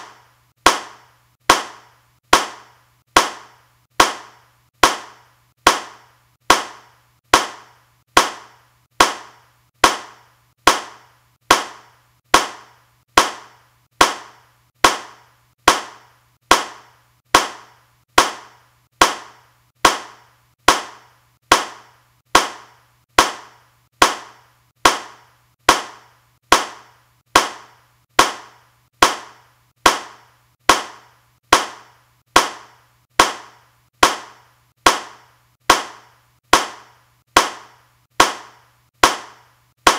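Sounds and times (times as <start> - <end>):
hand clapping: 3.2 - 6.8, 36.6 - 39.9.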